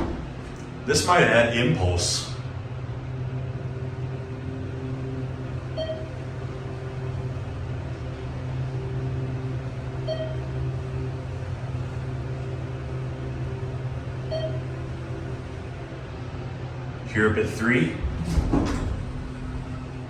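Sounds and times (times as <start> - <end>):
elevator pump humming: 0.0 - 20.0.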